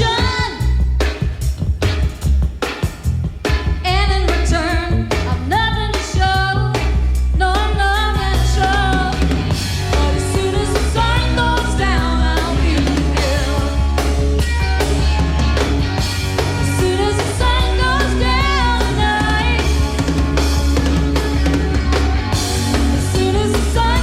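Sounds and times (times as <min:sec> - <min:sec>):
female lead vocal: 0:00.0 - 0:01.0, 0:03.8 - 0:13.9, 0:16.6 - 0:20.0, 0:22.9 - 0:24.0
drum kit: 0:00.0 - 0:24.0
heavy electric bass line: 0:00.0 - 0:24.0.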